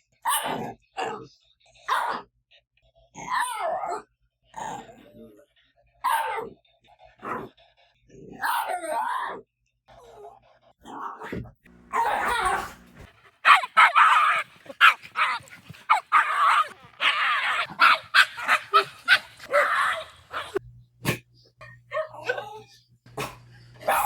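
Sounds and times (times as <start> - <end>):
dog yelping: 8.4 - 9.3, 11.9 - 24.0
dog yowling cries: 11.9 - 20.6, 21.6 - 24.0.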